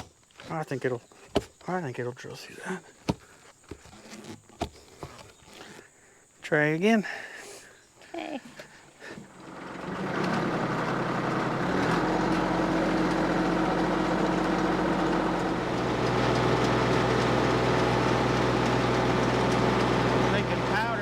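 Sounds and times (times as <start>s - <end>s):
auger grinding hard ground: 9.0s - 21.0s
tractor engine running: 9.2s - 21.0s.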